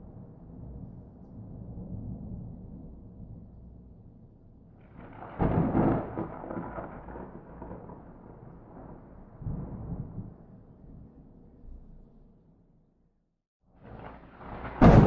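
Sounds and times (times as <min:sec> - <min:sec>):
thunder rumbling and clapping: 0:04.8 - 0:11.2, 0:13.8 - 0:15.0.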